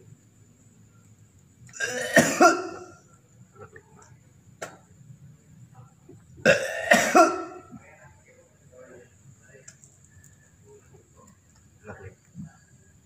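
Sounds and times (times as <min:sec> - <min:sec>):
throat-clearing cough: 0:01.8 - 0:02.9, 0:06.4 - 0:07.6.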